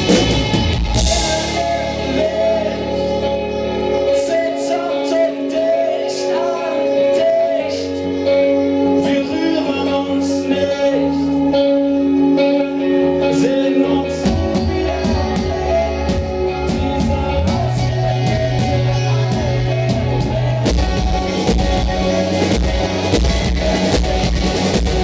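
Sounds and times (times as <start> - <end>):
drums and cymbals: 0.0 - 2.4, 16.1 - 25.0
sustained guitar chords: 0.0 - 25.0.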